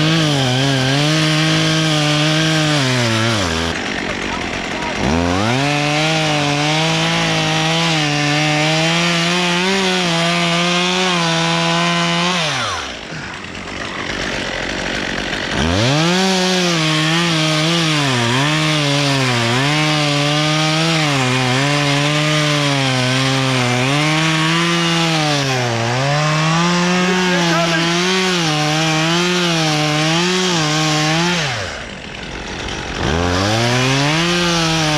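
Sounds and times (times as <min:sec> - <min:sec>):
chainsaw revving and cutting wood: 0:00.0 - 0:34.9.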